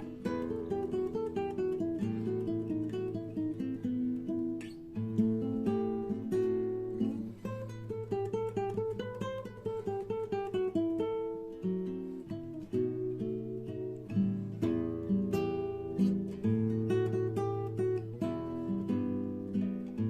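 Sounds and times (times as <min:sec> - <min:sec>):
acoustic guitar picking: 0:00.0 - 0:20.0.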